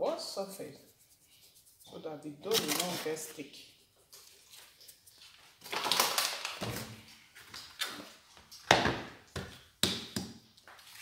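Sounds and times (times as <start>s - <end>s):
brushing rustle on work surface: 0.5s - 5.4s.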